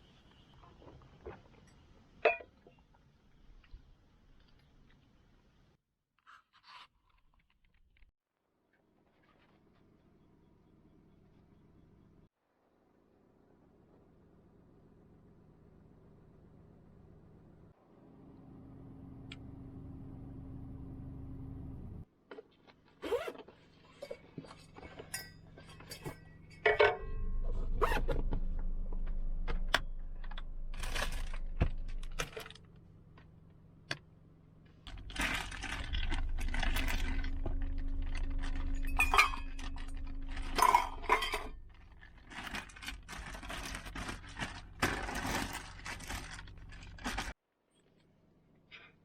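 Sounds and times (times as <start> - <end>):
low steady rumble: 14.6 - 22.0, 26.5 - 47.3
metal cookware clinking: 24.9 - 27.7, 38.1 - 41.6.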